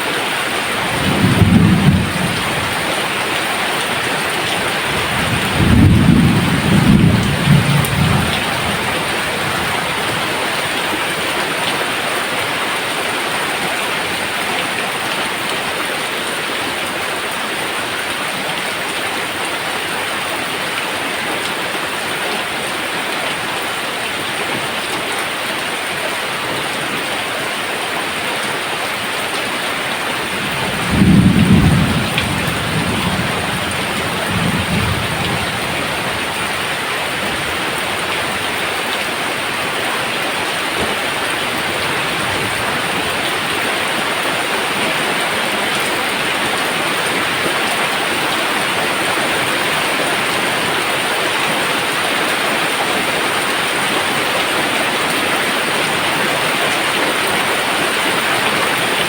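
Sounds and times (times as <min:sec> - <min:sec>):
steady rain falling: 0:00.0 - 0:59.0
thunder rumbling: 0:00.8 - 0:03.2, 0:04.4 - 0:10.4, 0:30.2 - 0:39.0.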